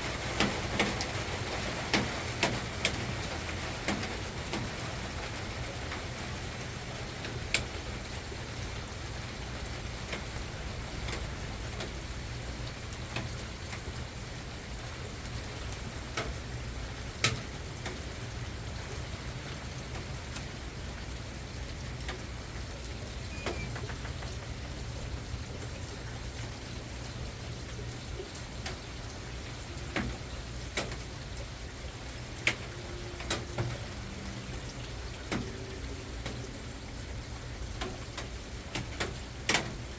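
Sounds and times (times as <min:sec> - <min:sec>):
soft rain falling: 0:00.0 - 0:39.9.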